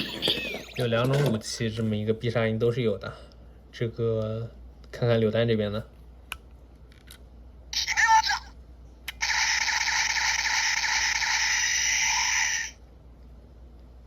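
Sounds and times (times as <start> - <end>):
toy electronic sound effect: 0.0 - 0.9, 9.1 - 12.8.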